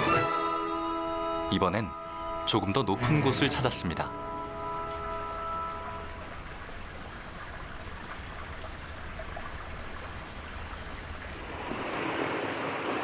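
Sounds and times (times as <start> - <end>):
held musical notes: 0.0 - 6.9
stream water rushing: 0.0 - 13.0.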